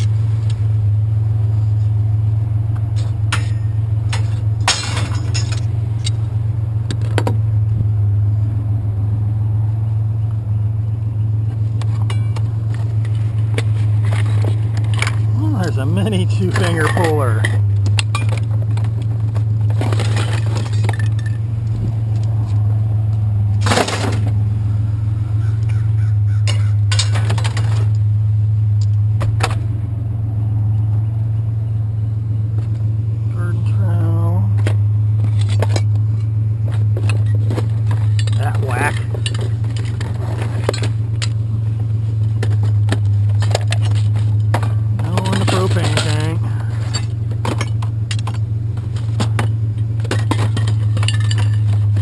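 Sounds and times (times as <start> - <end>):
steady low drone: 0.0 - 52.0
vehicle engine idling: 0.0 - 52.0
metal tools clinking: 3.0 - 6.2, 14.0 - 18.9, 19.7 - 21.5, 26.4 - 27.9, 37.0 - 41.4, 42.4 - 52.0.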